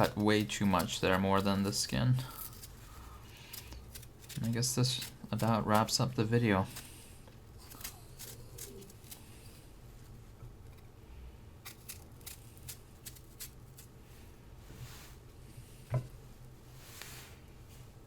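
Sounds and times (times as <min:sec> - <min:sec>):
knife cutting crisp fruit: 0:00.0 - 0:07.0, 0:07.6 - 0:09.6, 0:11.6 - 0:13.9.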